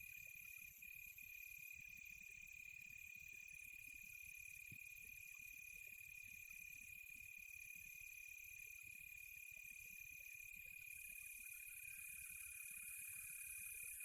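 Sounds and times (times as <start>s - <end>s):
high-pitched insect chorus: 10.1s - 14.0s.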